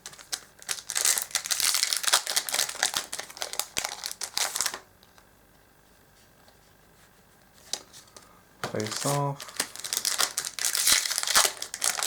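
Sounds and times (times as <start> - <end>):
foil wrapper crinkling: 0.0 - 4.9, 8.8 - 12.0.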